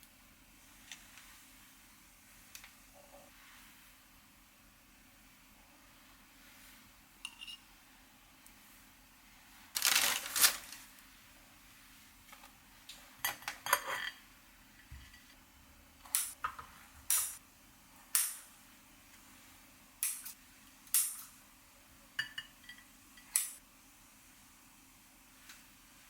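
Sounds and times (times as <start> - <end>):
dishes and cutlery clinking: 13.2 - 14.2, 22.2 - 23.6.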